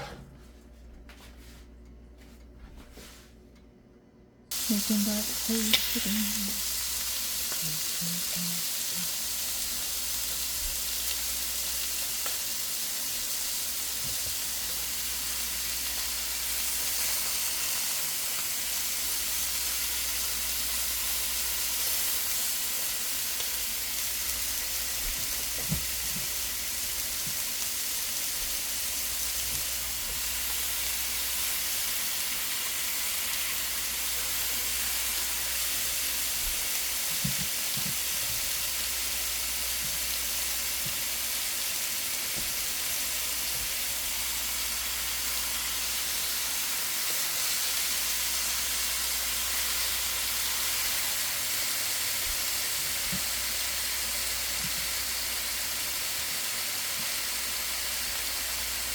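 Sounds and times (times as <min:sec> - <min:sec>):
food sizzling in a pan: 0:04.5 - 0:58.9.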